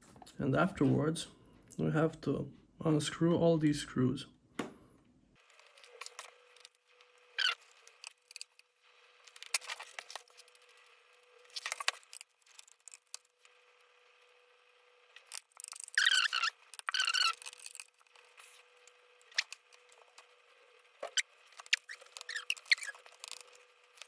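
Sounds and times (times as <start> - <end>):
squeaky scraping: 7.3 - 8.5, 15.2 - 20.3, 21.0 - 24.0
screwdriver clicking and scraping: 7.4 - 8.6, 15.2 - 18.6, 21.0 - 24.0.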